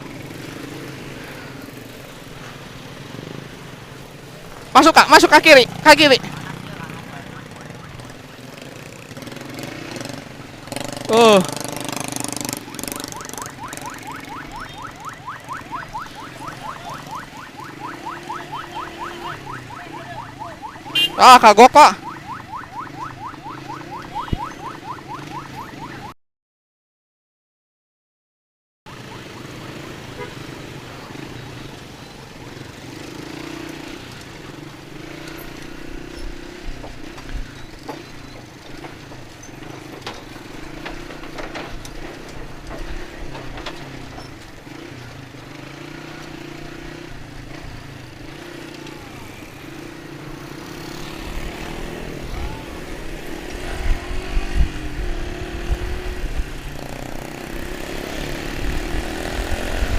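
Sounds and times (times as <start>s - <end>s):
motorcycle engine running: 0.0s - 24.5s.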